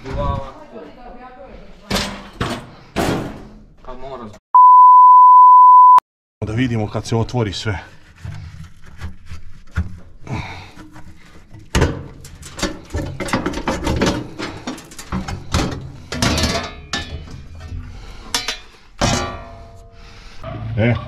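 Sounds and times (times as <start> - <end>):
metal parts knocking and clanking: 11.7 - 19.5.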